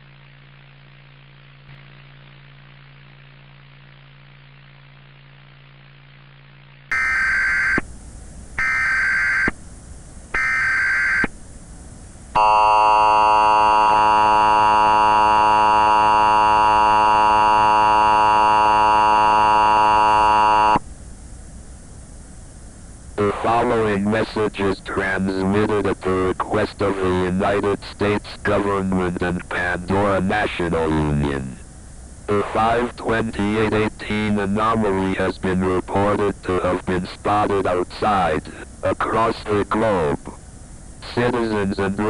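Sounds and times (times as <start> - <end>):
faint low hum: 0.0 - 42.0
screeching data tone bursts: 6.9 - 7.8, 8.6 - 9.6, 10.4 - 11.3, 12.4 - 20.8.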